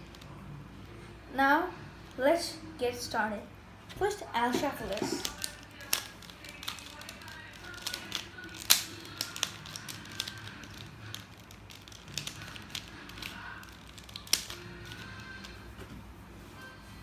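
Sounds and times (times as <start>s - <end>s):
music: 0.0s - 17.0s
plastic puzzle cube clicking: 5.0s - 15.0s.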